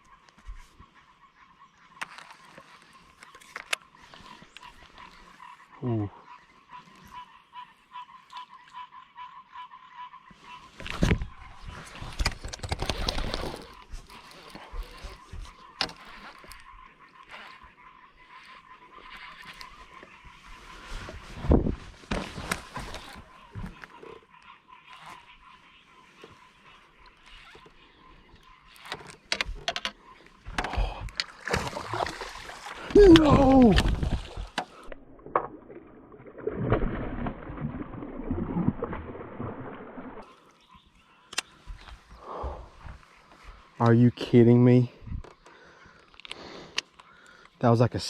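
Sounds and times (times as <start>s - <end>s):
frog croaking: 0.0s - 20.8s
fish splashing in water: 31.3s - 40.3s.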